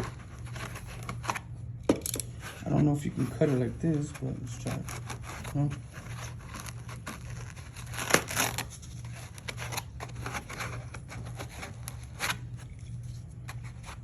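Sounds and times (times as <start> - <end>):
low steady hum: 0.0 - 14.0
foam cutting and tearing: 2.6 - 12.6.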